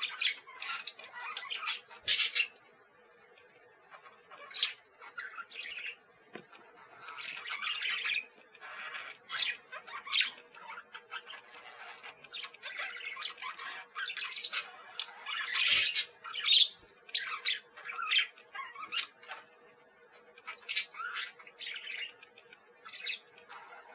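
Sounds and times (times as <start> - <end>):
parakeets chattering: 0.0 - 23.9.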